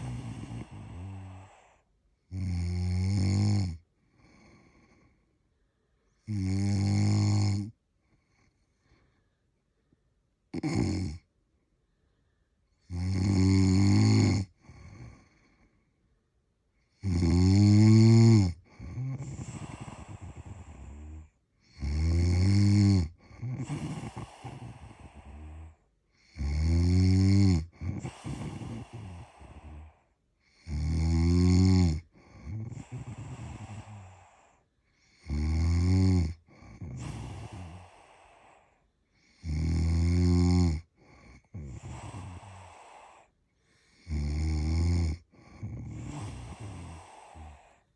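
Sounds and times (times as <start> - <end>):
person snoring loudly: 0.0 - 1.7, 2.3 - 3.8, 6.3 - 7.7, 10.6 - 11.2, 12.9 - 14.5, 17.0 - 30.0, 30.6 - 34.5, 35.2 - 38.6, 39.3 - 43.2, 44.0 - 47.8
breathy out-breath: 46.0 - 47.9.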